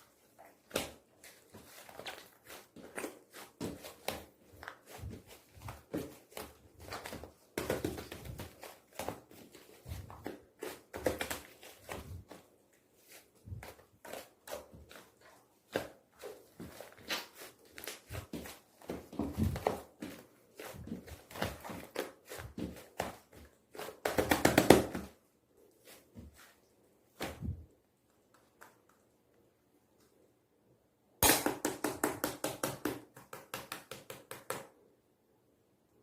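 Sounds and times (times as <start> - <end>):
hands squishing slime: 0.0 - 25.2.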